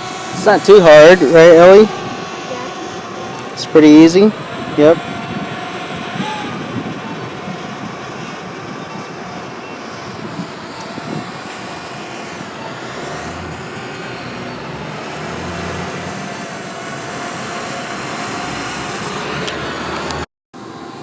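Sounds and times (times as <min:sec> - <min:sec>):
motor running: 0:12.2 - 0:20.2.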